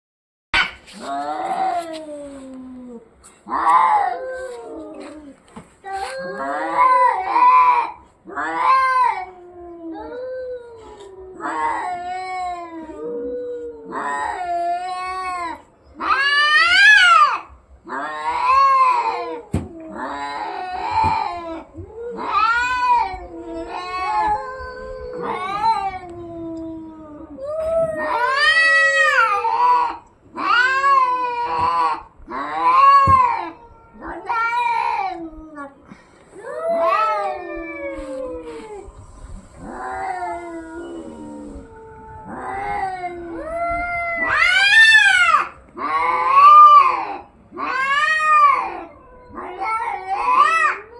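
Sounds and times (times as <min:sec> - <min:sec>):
cats yowling: 0:00.6 - 0:50.9
low falling moan: 0:19.3 - 0:28.4, 0:35.1 - 0:44.4.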